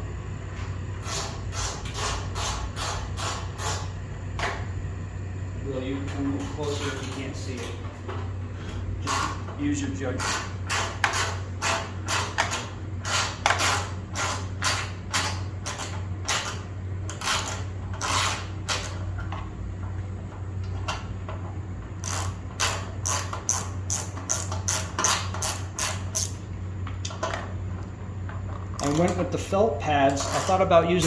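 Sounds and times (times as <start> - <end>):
socket ratchet clicking: 28.8 - 29.2, 30.1 - 30.6.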